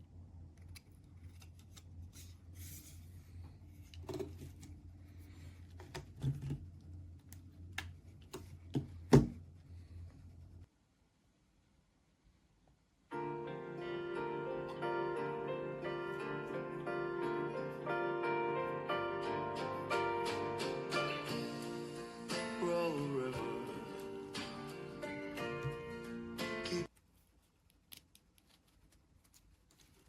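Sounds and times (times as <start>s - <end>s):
steady low hum: 0.0s - 11.8s
objects handled with clicks and rubbing: 0.5s - 10.6s, 26.9s - 30.0s
background music sustained notes: 13.1s - 26.9s.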